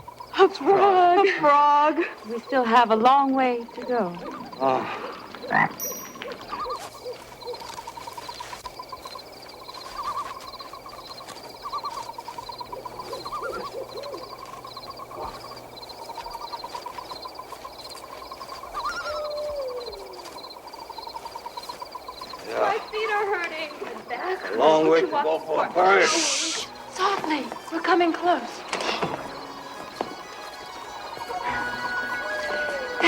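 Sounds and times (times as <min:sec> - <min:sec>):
pulsing chorus of night creatures: 0:00.0 - 0:33.0
owl hooting: 0:03.6 - 0:24.6, 0:25.8 - 0:33.0
falling animal call: 0:03.9 - 0:07.9, 0:11.6 - 0:14.4, 0:18.4 - 0:20.6, 0:26.0 - 0:26.7, 0:31.2 - 0:33.0.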